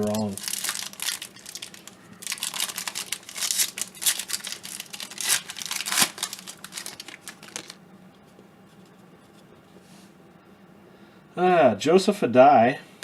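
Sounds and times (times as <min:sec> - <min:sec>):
wrapper crinkling and tearing: 0:00.0 - 0:07.8.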